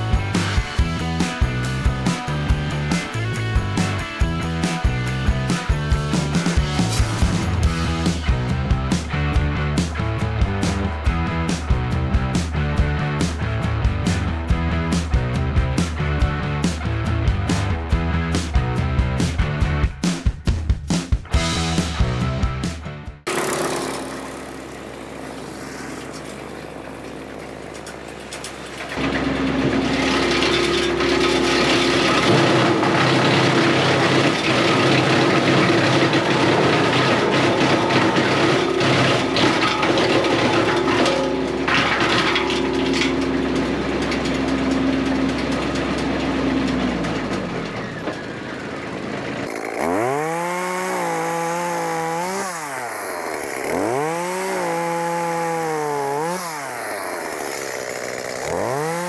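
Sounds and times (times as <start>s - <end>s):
chainsaw cutting wood: 0.0s - 9.9s, 21.4s - 45.6s, 49.4s - 59.0s
chainsaw revving: 0.0s - 9.9s, 21.4s - 45.5s, 49.4s - 59.0s.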